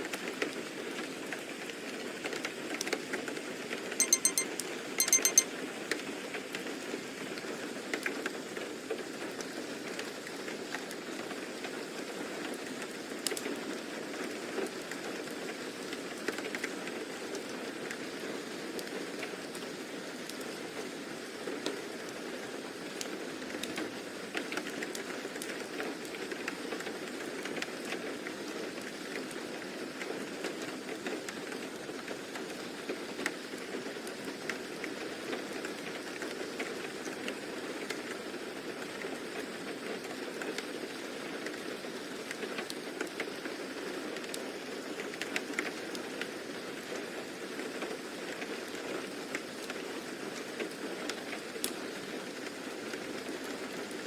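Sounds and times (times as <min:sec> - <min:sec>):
raindrop ticks: 0:04.0 - 0:05.5
steady rain hiss: 0:08.4 - 0:54.0.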